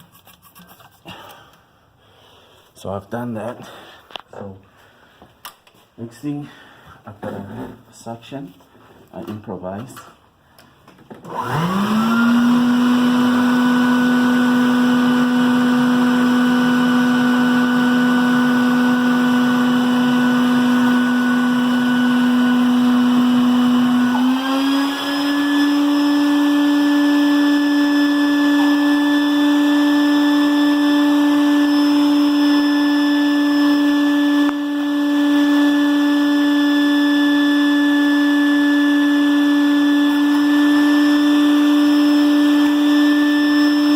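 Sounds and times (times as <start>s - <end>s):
shop vac motor whining: 11.1s - 43.9s.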